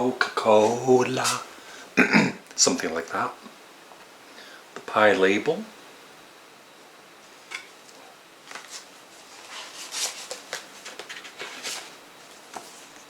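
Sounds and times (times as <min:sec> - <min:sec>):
paper booklet rustling: 0:07.6 - 0:13.0.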